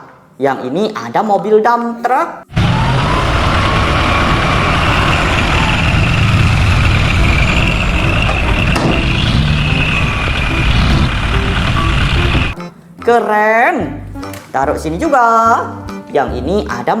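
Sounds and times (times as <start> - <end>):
faint high whine: 2.5 - 12.6
truck engine idling: 2.5 - 12.6.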